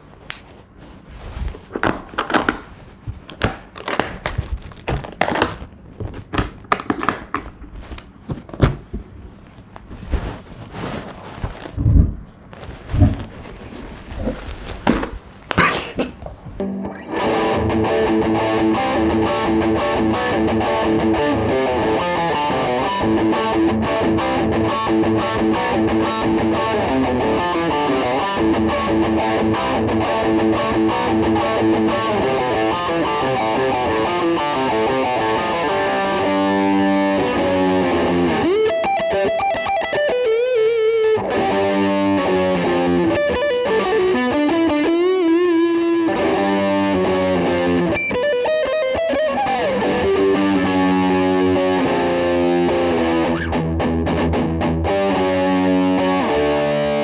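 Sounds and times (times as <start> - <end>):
distorted electric guitar: 16.6 - 57.0.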